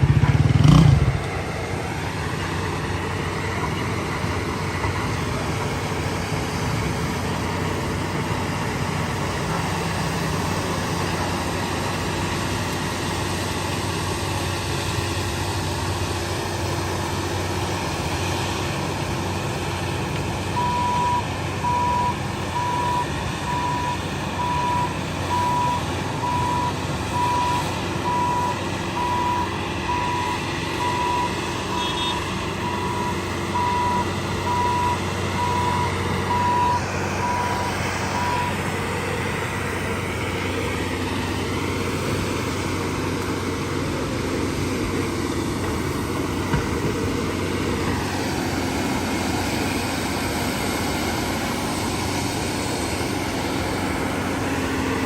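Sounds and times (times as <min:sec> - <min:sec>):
diesel engine running: 0:00.0 - 0:55.0
reversing alarm beeping: 0:20.6 - 0:38.6.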